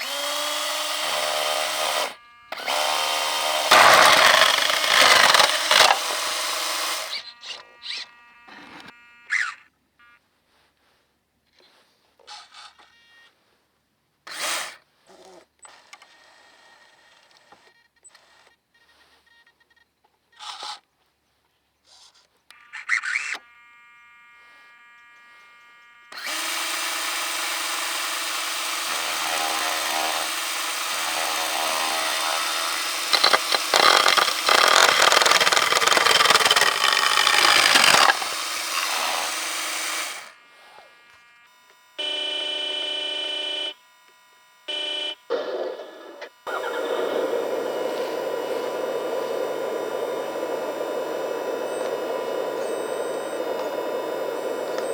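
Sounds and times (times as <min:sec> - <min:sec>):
electric chainsaw motor whining: 0:00.0 - 0:09.7, 0:14.3 - 0:14.8, 0:22.5 - 0:54.9
short whirs and clicks: 0:00.0 - 0:10.2, 0:14.3 - 0:18.7, 0:22.5 - 0:54.9.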